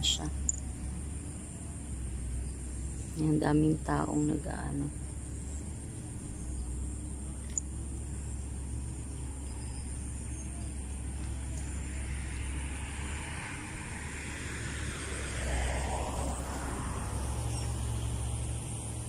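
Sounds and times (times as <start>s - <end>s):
road traffic rumble: 0.0s - 19.0s
passing vehicle hiss: 4.8s - 19.0s.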